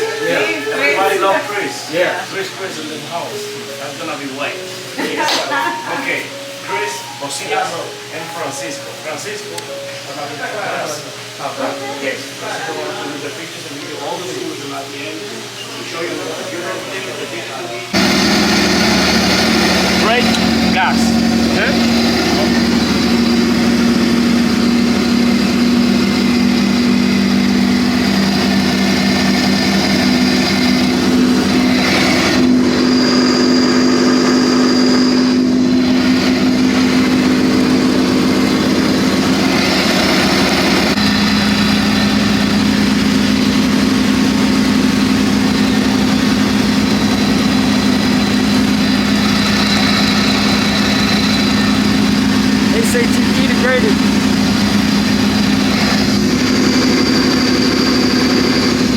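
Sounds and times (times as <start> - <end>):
engine running steadily: 17.9 - 58.9.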